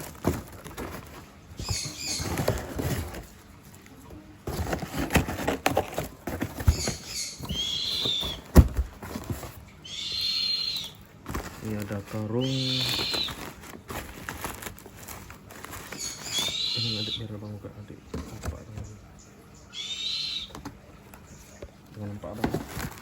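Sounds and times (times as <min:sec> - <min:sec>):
rope and parcel rustling: 0:00.0 - 0:09.7, 0:11.0 - 0:17.0, 0:21.9 - 0:23.0.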